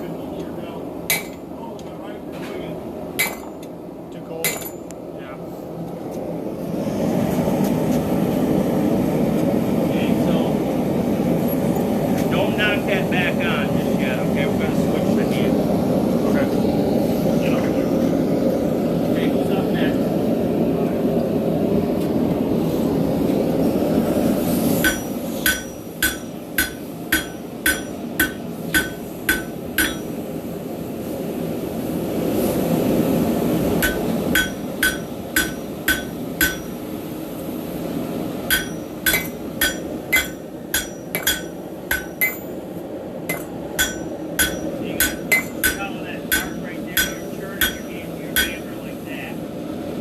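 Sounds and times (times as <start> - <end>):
hammer striking spike on anvil: 1.1 - 1.4, 3.2 - 3.6, 4.4 - 4.8, 24.8 - 30.2, 33.8 - 36.8, 38.5 - 42.6, 43.3 - 48.7.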